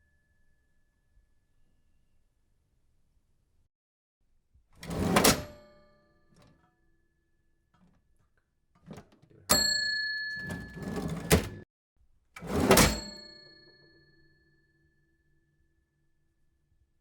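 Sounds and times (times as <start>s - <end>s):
cash drawer slamming open: 4.8s - 5.7s, 10.4s - 11.6s, 12.4s - 13.2s
cash register bell ding: 4.9s - 6.0s, 9.5s - 11.6s, 12.4s - 14.7s.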